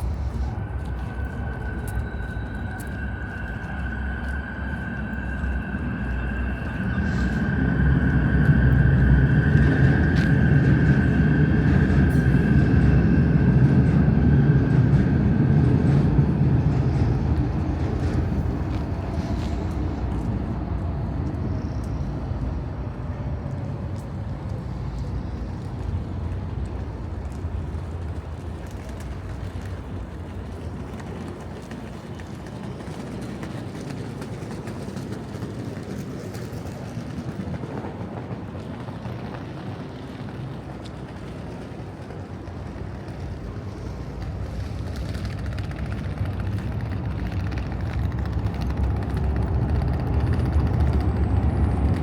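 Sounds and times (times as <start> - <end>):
rumble of passing vehicles: 0.0 - 52.0.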